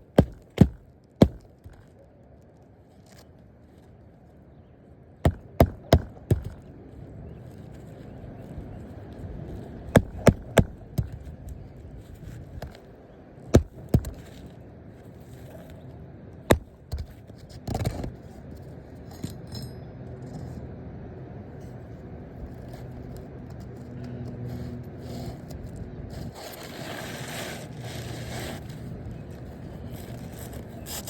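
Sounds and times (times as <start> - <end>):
hand tools knocking on shingles: 0.0 - 1.8, 5.2 - 6.6, 10.0 - 11.3, 13.6 - 14.3, 16.5 - 17.2
scraping rustle: 13.7 - 16.0, 22.5 - 31.0.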